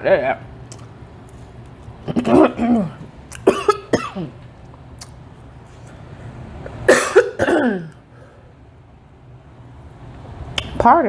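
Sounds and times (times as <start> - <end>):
woman coughing: 2.0 - 4.4, 6.9 - 8.0.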